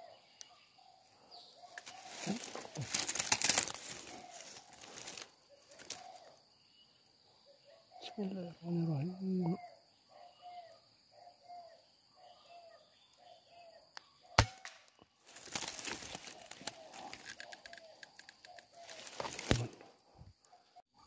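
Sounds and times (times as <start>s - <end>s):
birds: 0.0s - 21.0s
insects: 0.0s - 21.0s
rustling with clicks: 1.7s - 6.1s, 15.3s - 19.8s.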